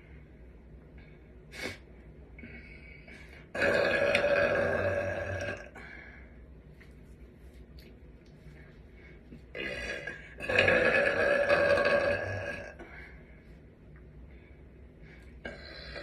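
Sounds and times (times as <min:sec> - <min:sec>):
girl burping loudly: 0:03.5 - 0:05.8, 0:09.6 - 0:12.8.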